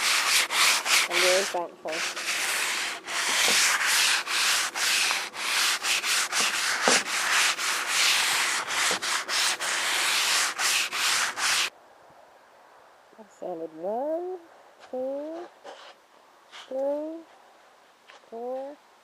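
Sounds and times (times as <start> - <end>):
sanding wood: 0.0 - 11.7.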